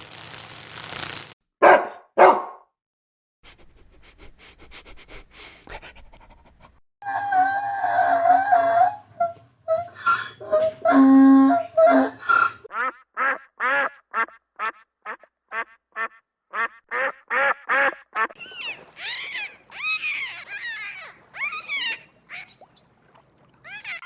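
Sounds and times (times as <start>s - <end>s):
animal calls: 7.0s - 22.9s, 23.6s - 24.0s.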